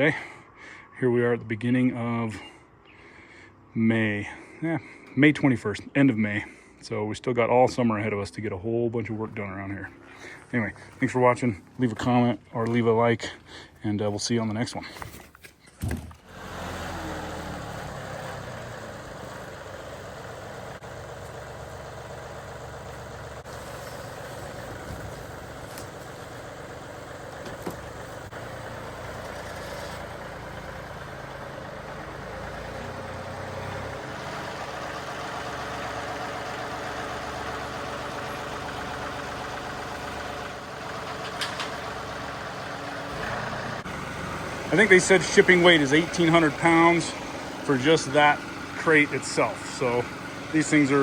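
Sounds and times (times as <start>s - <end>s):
engine idling: 16.1s - 51.0s.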